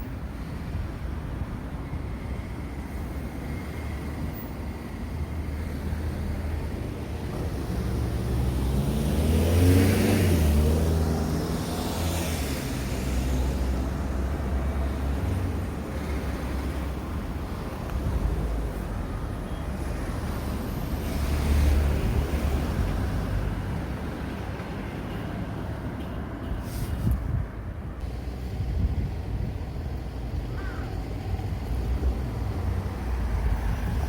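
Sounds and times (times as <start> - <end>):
low traffic rumble: 0.0 - 34.0
vehicle passing by: 7.4 - 19.2, 19.8 - 24.4.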